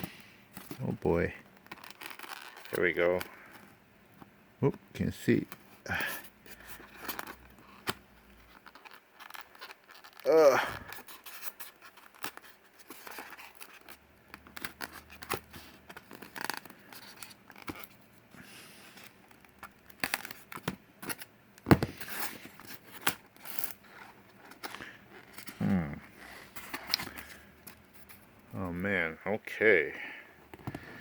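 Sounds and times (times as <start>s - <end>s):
packaging scraping and rustling: 0.0s - 3.8s, 5.5s - 28.3s
person grunting: 10.2s - 10.9s, 25.6s - 26.0s.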